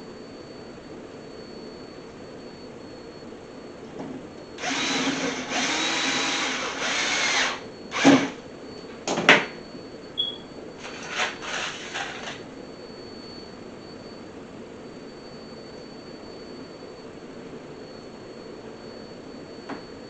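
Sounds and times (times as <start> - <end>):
power drill motor whine: 4.6 - 8.4, 10.2 - 12.5.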